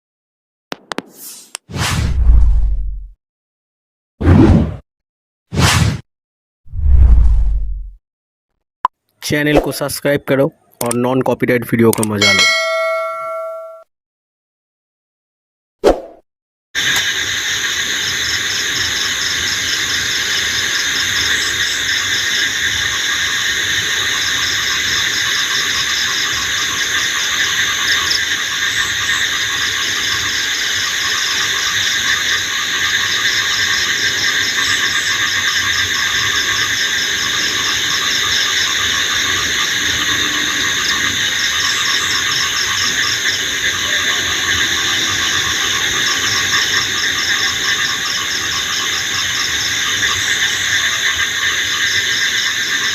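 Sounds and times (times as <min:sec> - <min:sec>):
crickets and insects trilling: 0:16.8 - 0:52.9.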